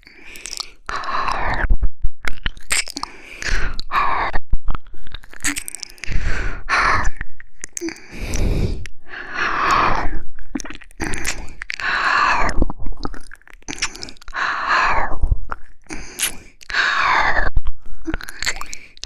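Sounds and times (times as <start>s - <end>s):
wet licking and kissing clicks: 0.0s - 1.4s, 2.3s - 3.9s, 5.0s - 6.2s, 7.6s - 9.0s, 10.5s - 12.2s, 13.0s - 14.4s, 15.5s - 16.8s, 18.1s - 19.0s
breathy exhales: 8.0s - 10.1s.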